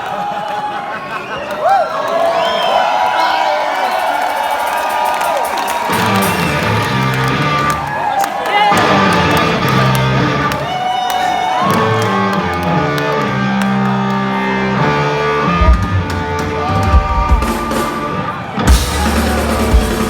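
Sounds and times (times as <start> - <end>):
bass guitar: 5.9 - 7.8, 8.7 - 10.6, 11.7 - 20.0
electric guitar: 8.7 - 10.7
hard rock band playing live: 14.7 - 20.0.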